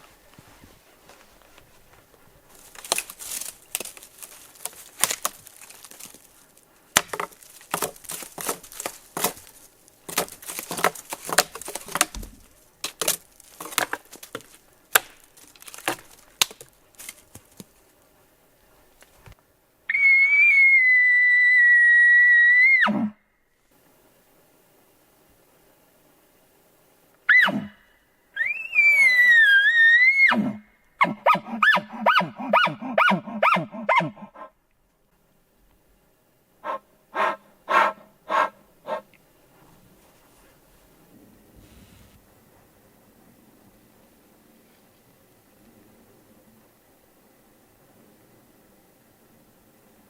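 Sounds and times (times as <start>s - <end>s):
footsteps through dry brush: 0.0s - 18.1s
elk bugle: 27.3s - 27.8s, 28.4s - 34.5s, 36.6s - 39.0s.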